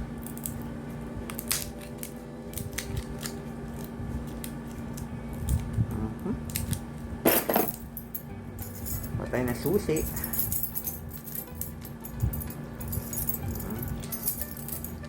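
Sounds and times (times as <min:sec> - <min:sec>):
steady low hum: 0:00.0 - 0:15.0
plastic packaging clicks and snips: 0:01.2 - 0:05.8.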